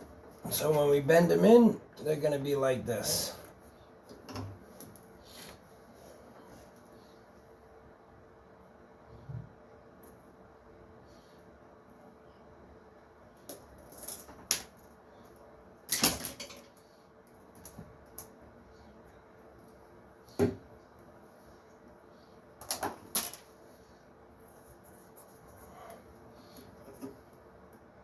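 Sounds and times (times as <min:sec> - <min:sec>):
small parts clicking and knocking: 0:22.6 - 0:23.5.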